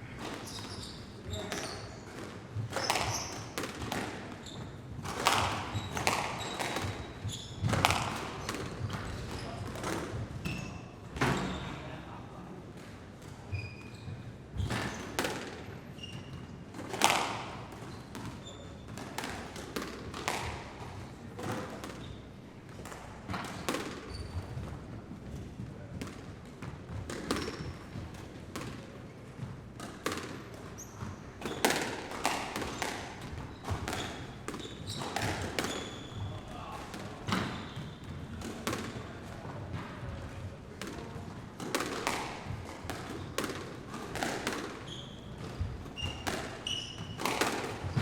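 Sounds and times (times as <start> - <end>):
balls bouncing in echoing hall: 0.0 - 48.0
shoe squeaks: 0.3 - 2.1, 2.7 - 3.6, 4.2 - 4.9, 5.5 - 9.6, 10.4 - 11.8, 13.4 - 15.2, 15.8 - 16.5, 17.8 - 19.0, 23.5 - 24.6, 30.7 - 31.8, 32.7 - 36.7, 37.3 - 38.3, 44.7 - 48.0.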